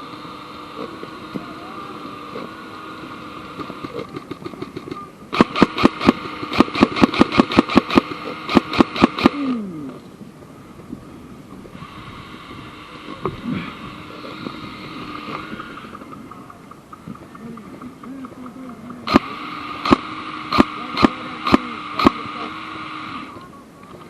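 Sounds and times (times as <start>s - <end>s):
steady background hum: 0.0s - 24.0s
airsoft gun rapid shots: 3.4s - 9.5s, 19.0s - 23.3s.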